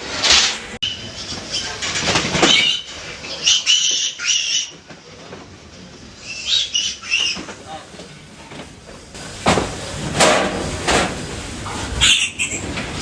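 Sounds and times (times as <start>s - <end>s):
piglets squealing: 2.4s - 4.8s, 6.2s - 7.5s, 12.0s - 12.8s.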